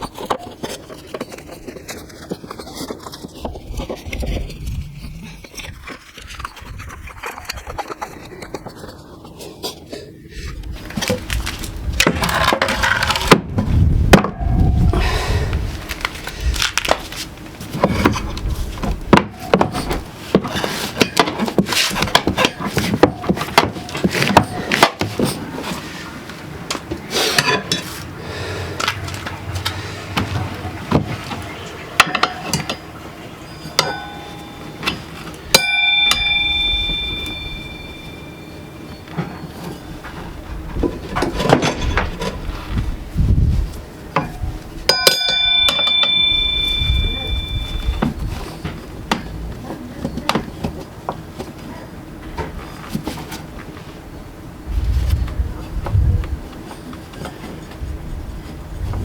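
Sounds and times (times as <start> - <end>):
metal tools clinking on wheel parts: 12.1 - 13.4, 32.0 - 40.2, 44.2 - 48.7
ringing tone: 33.4 - 39.9, 44.9 - 48.2.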